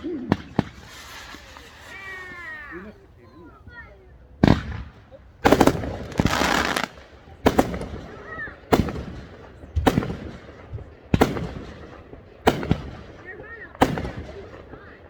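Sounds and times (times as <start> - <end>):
fireworks banging: 0.0 - 3.0, 4.4 - 14.9
fireworks crackle: 0.3 - 3.6, 4.4 - 9.1.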